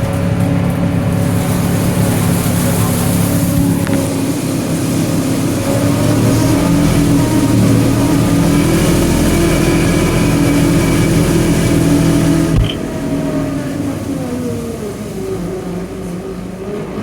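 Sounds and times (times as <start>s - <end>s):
tractor diesel engine: 0.0s - 17.0s.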